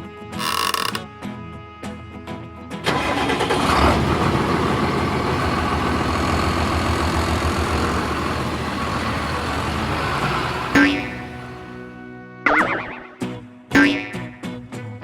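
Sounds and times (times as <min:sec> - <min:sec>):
vehicle engine pulsing rumble: 0:02.9 - 0:11.9.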